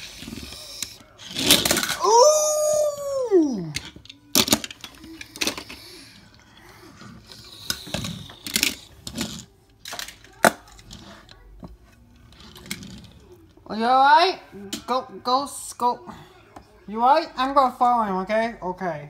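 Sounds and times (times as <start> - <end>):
toy cars clattering: 0.0 - 2.7, 3.7 - 13.6.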